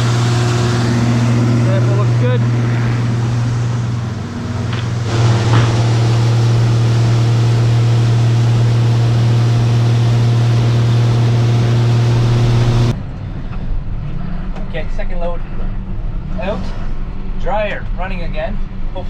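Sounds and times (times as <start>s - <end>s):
farm machinery deep hum: 0.0s - 12.9s.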